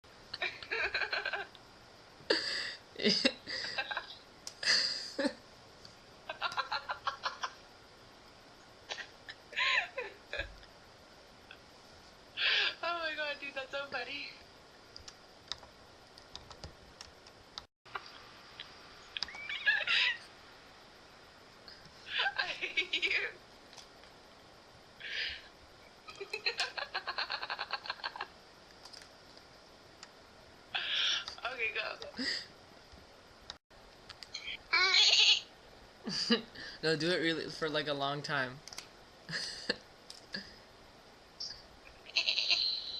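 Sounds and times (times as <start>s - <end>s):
woman laughing: 0.4s - 1.5s, 3.0s - 5.4s, 6.3s - 7.6s, 8.9s - 10.5s, 19.3s - 20.2s, 22.1s - 23.4s, 26.1s - 28.3s, 36.1s - 36.5s, 39.3s - 39.8s.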